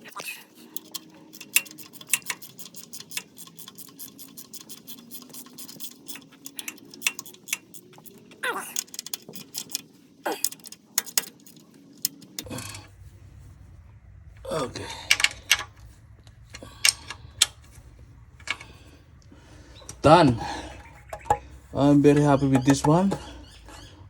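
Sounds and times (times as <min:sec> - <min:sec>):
ratchet wrench clicking: 0:00.0 - 0:12.8.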